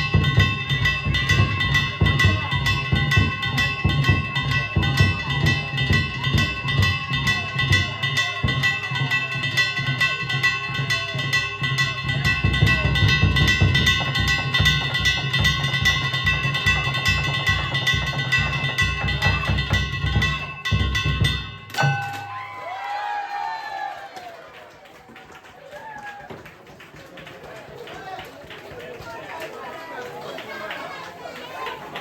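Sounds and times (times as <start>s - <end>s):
large taiko drum beat: 0.0s - 22.6s
hand gongs struck rhythmically: 0.0s - 22.8s.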